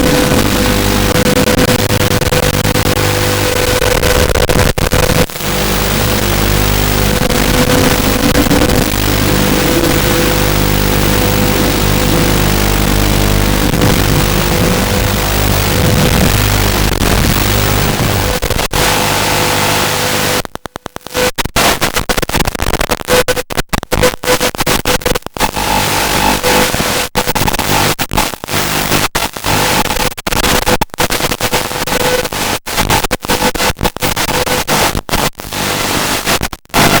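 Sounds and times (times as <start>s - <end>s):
low motor hum: 0.0s - 3.8s, 5.0s - 18.4s
loud static hiss: 0.0s - 37.0s.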